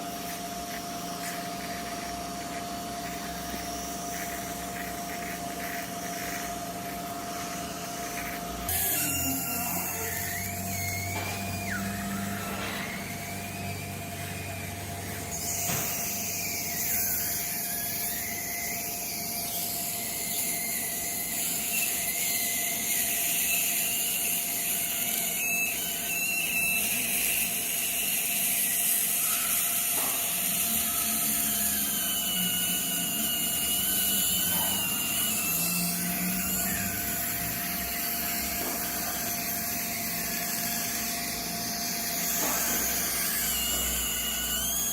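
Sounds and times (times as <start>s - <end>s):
steady hiss and hum: 0.0s - 11.1s
dental drill whining: 0.0s - 44.9s.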